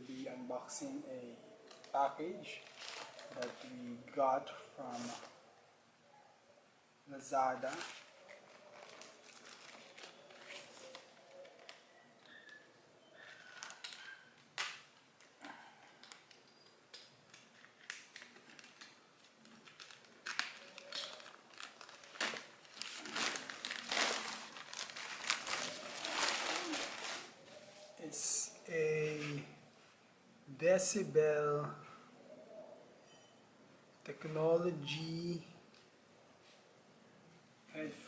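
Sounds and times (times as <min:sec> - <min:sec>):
plastic package crinkling: 0:02.5 - 0:03.8, 0:07.6 - 0:12.6, 0:13.2 - 0:27.6.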